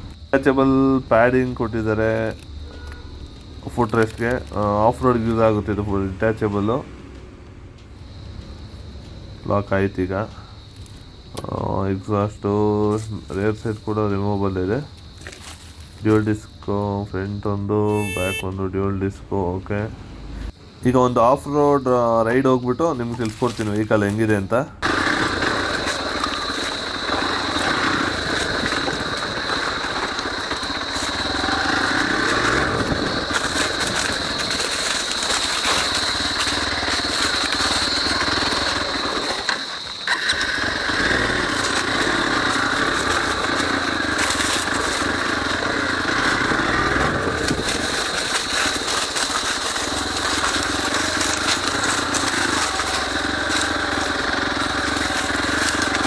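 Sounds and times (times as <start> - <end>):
motorcycle engine revving: 17.9 - 18.5, 24.8 - 56.0.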